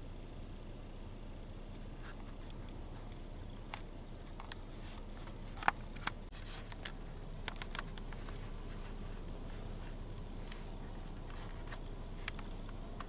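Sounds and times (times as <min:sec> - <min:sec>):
steady low rumble: 0:00.0 - 0:13.0
light rustles: 0:04.2 - 0:13.0.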